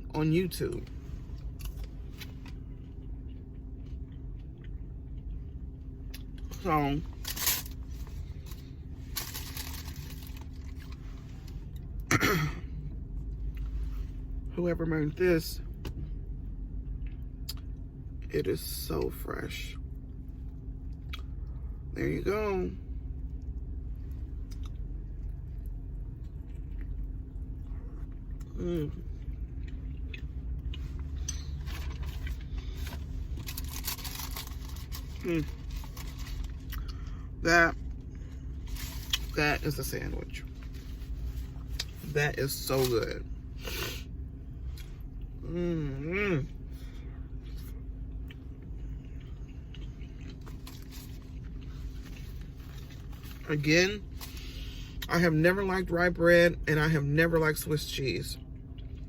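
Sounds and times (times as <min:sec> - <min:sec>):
vehicle rumble inside cabin: 0:00.0 - 0:59.0
rustling crackle: 0:07.1 - 0:11.6, 0:31.6 - 0:36.8, 0:38.6 - 0:39.4
chewing and biting sandwich: 0:23.0 - 0:39.7, 0:46.6 - 0:55.1
person humming: 0:45.5 - 0:46.4.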